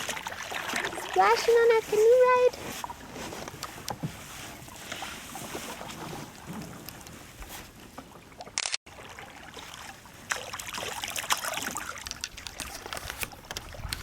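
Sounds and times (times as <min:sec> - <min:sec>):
water splashing and dribbling: 0:00.0 - 0:14.0.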